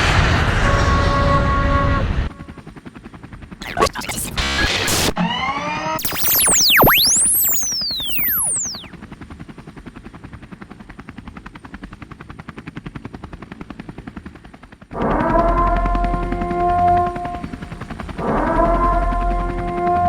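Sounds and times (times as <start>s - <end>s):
held electronic tones: 3.6s - 5.1s, 6.0s - 8.9s
electronic tones sweeping up and down: 3.6s - 8.9s
fast electronic pulsing: 3.6s - 8.9s.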